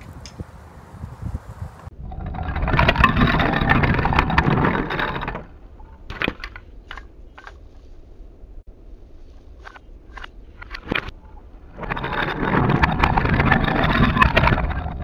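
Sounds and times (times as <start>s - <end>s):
toy trains rattling on wooden track: 2.2s - 7.5s, 9.7s - 15.0s.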